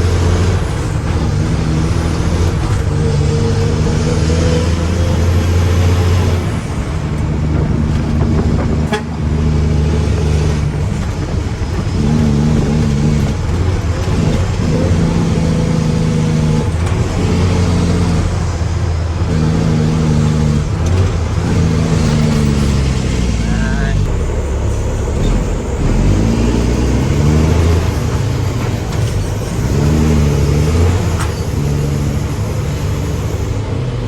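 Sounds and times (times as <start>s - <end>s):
truck diesel engine revving: 0.0s - 34.0s.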